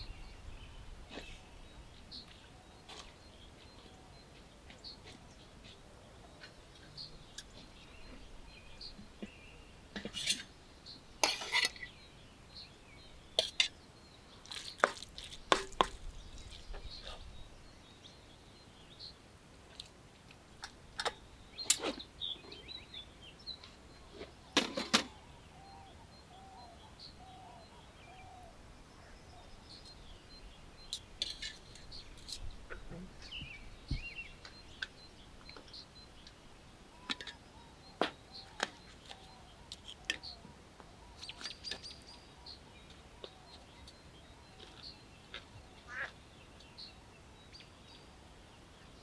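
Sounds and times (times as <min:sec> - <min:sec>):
faint bird chirps: 0:21.6 - 0:48.2.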